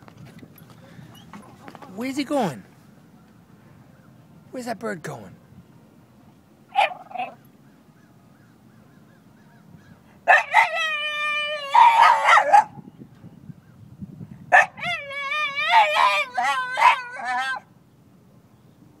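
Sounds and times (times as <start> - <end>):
dog howling: 10.3 - 12.7, 14.5 - 17.7.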